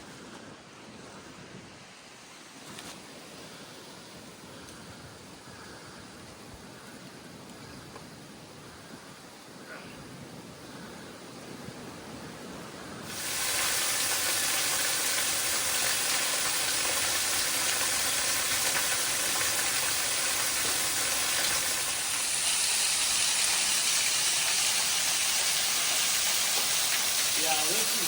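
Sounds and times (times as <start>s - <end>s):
rushing water hiss: 11.6s - 28.0s.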